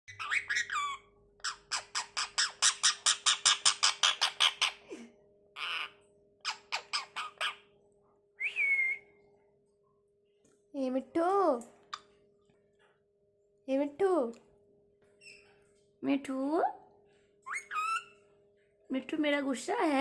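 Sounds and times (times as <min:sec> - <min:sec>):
parrot squawking: 0:00.1 - 0:04.8, 0:05.6 - 0:07.7, 0:17.5 - 0:18.1
parrot whistled call: 0:17.5 - 0:18.1.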